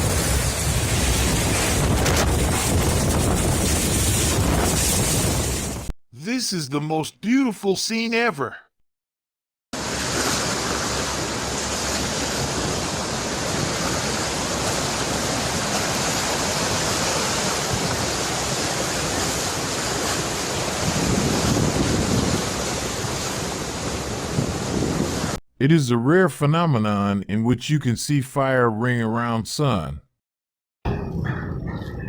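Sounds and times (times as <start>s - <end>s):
rushing water: 9.8s - 25.3s.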